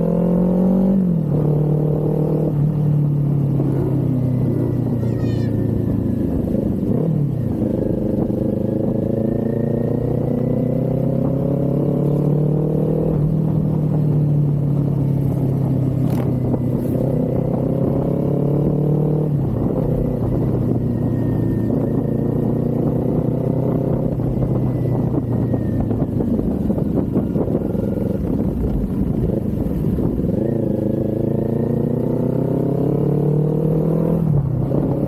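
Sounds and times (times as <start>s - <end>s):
motorcycle engine accelerating: 0.0s - 35.0s.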